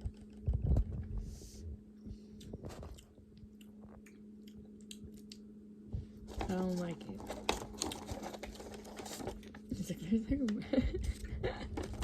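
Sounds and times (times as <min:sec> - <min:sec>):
person chewing: 0:02.4 - 0:05.5.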